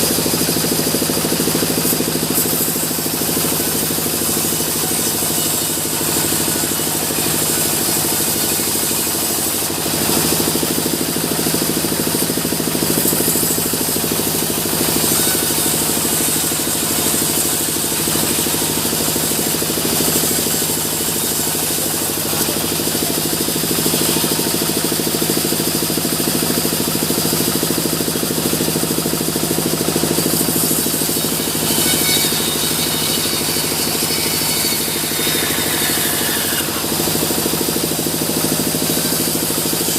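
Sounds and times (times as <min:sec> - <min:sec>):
sawmill machinery drone: 0:00.0 - 0:39.9.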